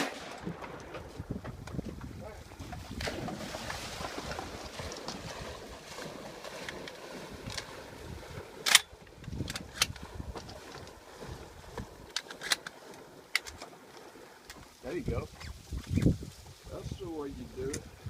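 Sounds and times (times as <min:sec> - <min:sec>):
wind noise on microphone: 0:00.3 - 0:05.7, 0:07.2 - 0:12.2, 0:15.0 - 0:18.0.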